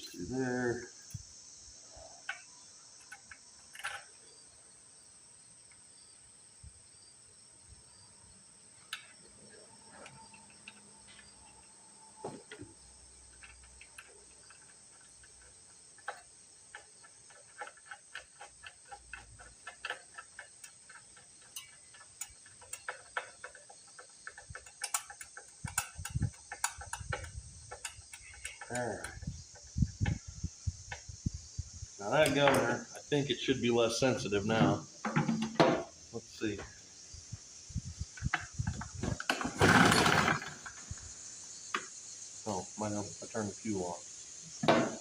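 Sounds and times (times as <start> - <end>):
metal parts and tools clicking: 3.0 - 4.2, 13.3 - 29.6.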